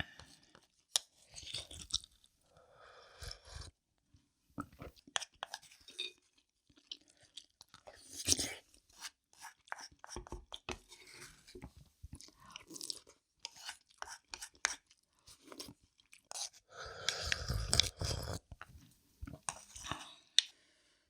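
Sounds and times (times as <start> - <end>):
chewing food crunches: 1.4 - 2.2.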